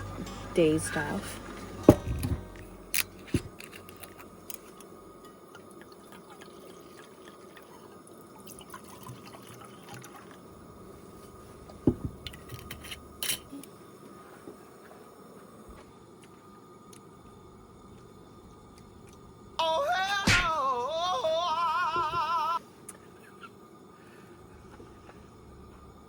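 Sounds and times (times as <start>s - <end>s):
liquid being poured: 3.6s - 11.2s.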